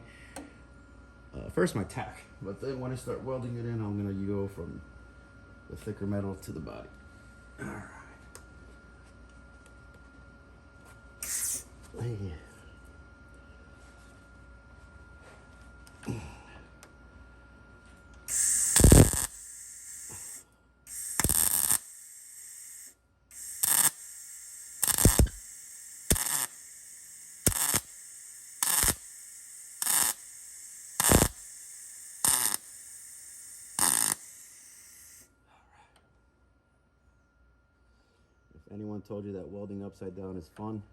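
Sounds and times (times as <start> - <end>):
welder arc crackling: 11.2 - 11.6, 18.3 - 35.3.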